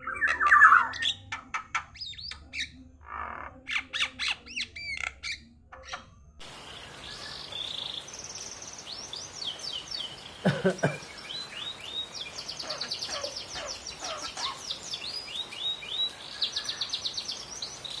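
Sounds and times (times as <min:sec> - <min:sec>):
bird singing chirps and whistles: 0:00.0 - 0:02.8
harsh cough-like bird call: 0:10.4 - 0:11.2.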